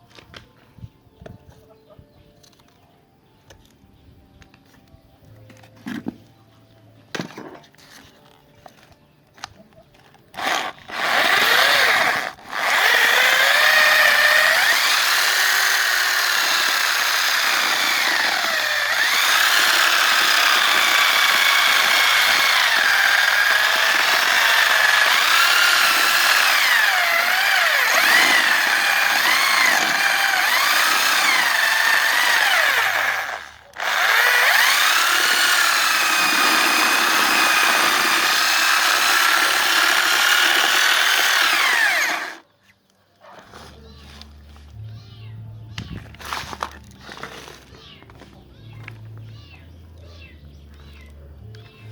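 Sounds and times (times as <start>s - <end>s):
electric motor grinder whining: 10.3s - 42.4s.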